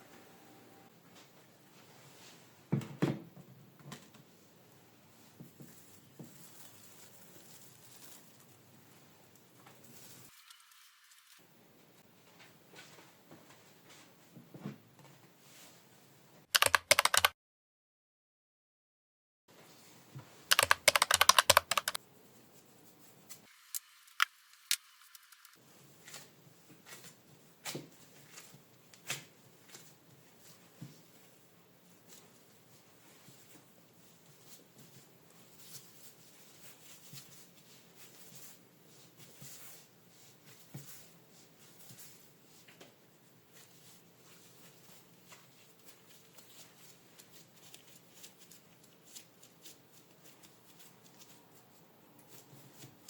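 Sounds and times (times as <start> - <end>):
soft rustling and scraping: 1.1 - 2.6, 5.1 - 16.2, 29.5 - 53.0
sharp clicks and taps: 16.6 - 17.4, 20.5 - 22.0.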